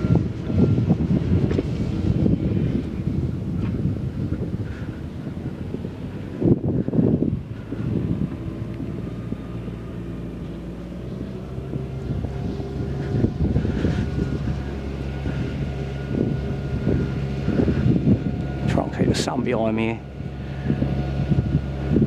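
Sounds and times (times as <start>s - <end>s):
wind buffeting microphone: 0.0s - 22.0s
model plane motor droning: 6.2s - 18.7s.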